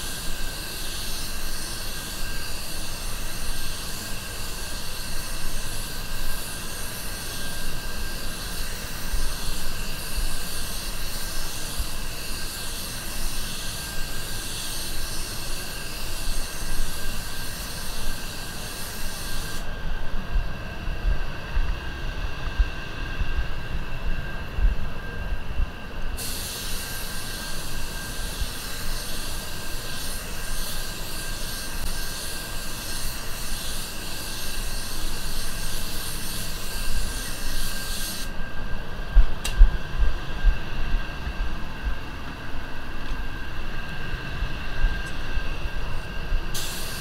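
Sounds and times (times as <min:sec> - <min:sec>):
spray gun hissing: 0:00.0 - 0:19.7, 0:26.2 - 0:38.4, 0:46.5 - 0:47.0
low rumble and hum: 0:38.4 - 0:46.5.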